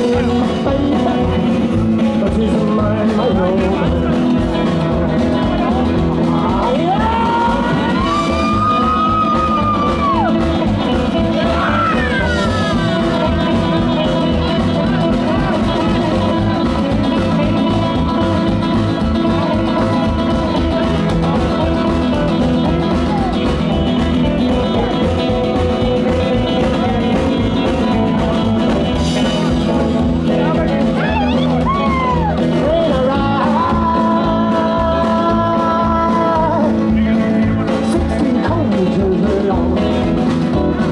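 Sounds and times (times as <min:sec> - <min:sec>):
bass and drums: 0:00.0 - 0:40.9
electric guitar: 0:00.0 - 0:40.9.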